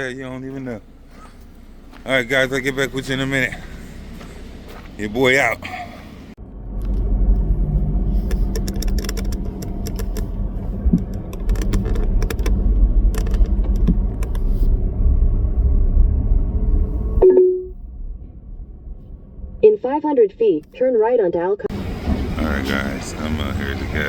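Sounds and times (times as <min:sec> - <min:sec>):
truck engine and road rumble: 0:00.0 - 0:24.0
light rattling clicks: 0:08.3 - 0:14.5.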